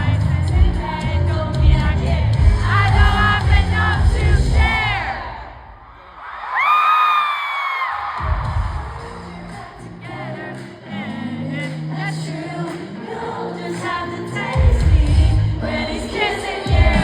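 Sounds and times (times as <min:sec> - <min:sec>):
heavy bass beat: 0:00.0 - 0:05.0, 0:14.6 - 0:15.6, 0:16.7 - 0:17.0
person singing: 0:00.0 - 0:05.1, 0:08.5 - 0:17.0
crowd singing along: 0:00.0 - 0:06.2, 0:08.2 - 0:17.0.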